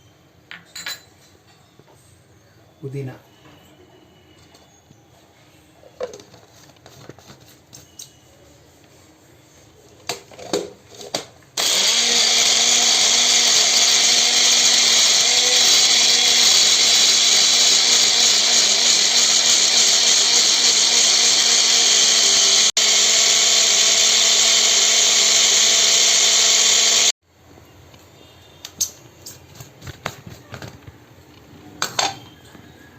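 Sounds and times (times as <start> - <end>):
mixer grinder running: 11.6 - 27.2.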